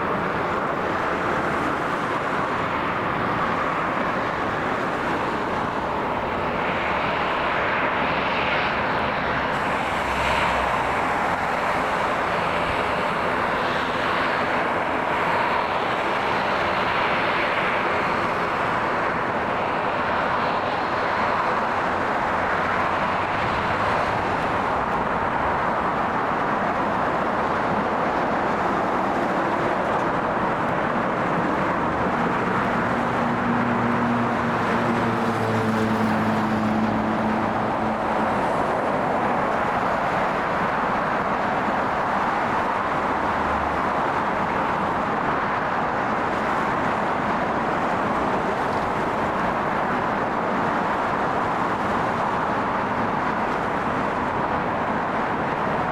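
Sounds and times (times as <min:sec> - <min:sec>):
airliner engines running: 0:00.0 - 0:55.9.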